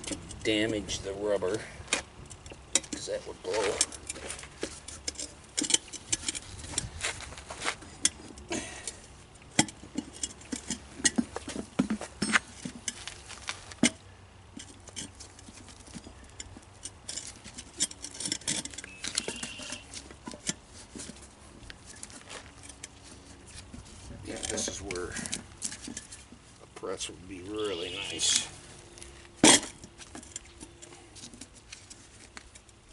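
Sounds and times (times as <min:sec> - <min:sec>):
brief squeak: 0:18.8 - 0:19.9.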